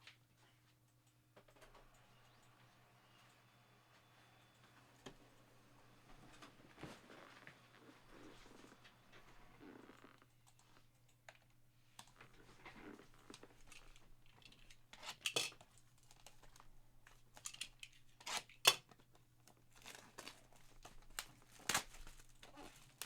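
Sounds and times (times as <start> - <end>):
plastic wrapper crinkling: 19.6 - 23.0
wrapper ripping: 19.7 - 23.0.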